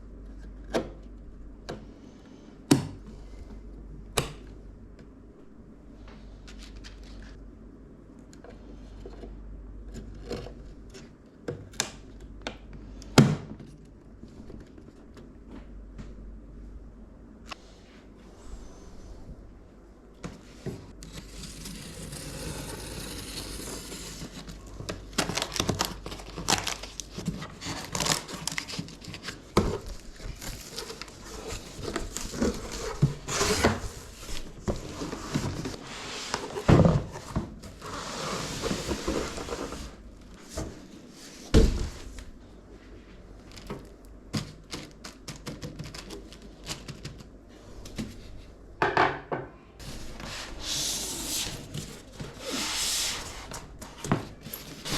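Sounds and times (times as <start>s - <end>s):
packaging rustling: 24.0s - 35.8s.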